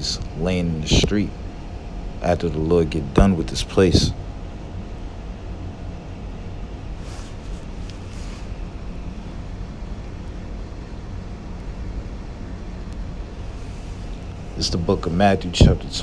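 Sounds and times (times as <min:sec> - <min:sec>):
air conditioning blowing: 0:00.0 - 0:16.0
soft rustles: 0:06.9 - 0:09.1, 0:13.3 - 0:14.9.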